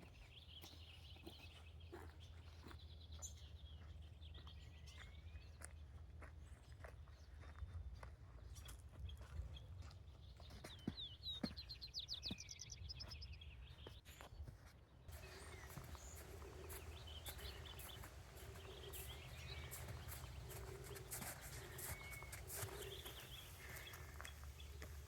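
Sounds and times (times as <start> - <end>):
footsteps clicking on trail: 0.0 - 25.0
birds chirping: 10.2 - 14.3, 15.1 - 25.0
faint low hum: 15.1 - 25.0
songbird trilling: 15.1 - 25.0.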